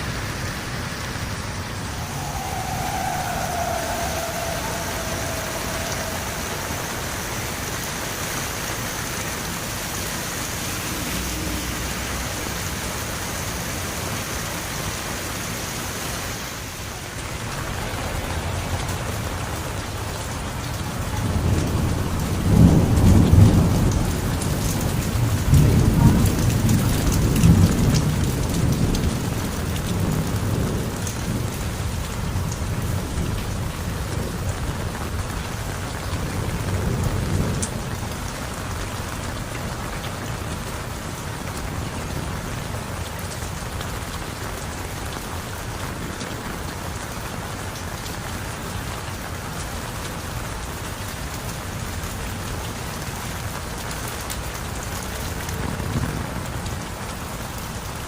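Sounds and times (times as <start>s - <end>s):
heavy rain falling: 0.0s - 58.0s
rolling thunder: 1.1s - 8.8s, 17.0s - 39.4s.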